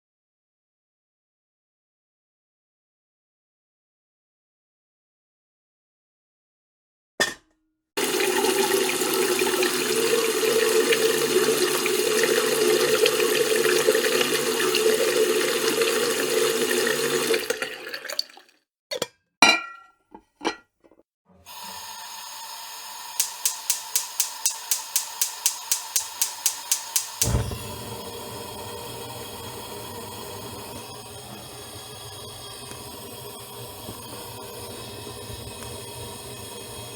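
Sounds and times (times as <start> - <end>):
tap water running: 8.0 - 18.6, 21.4 - 36.9
gas hiss: 21.5 - 29.8
gas stove igniter clicking: 23.2 - 28.1.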